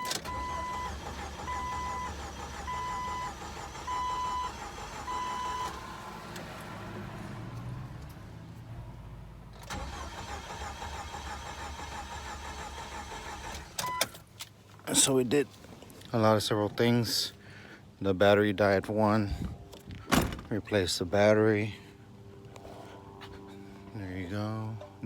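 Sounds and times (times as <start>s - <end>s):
engine cranking without starting: 0.0s - 6.6s, 9.6s - 14.0s.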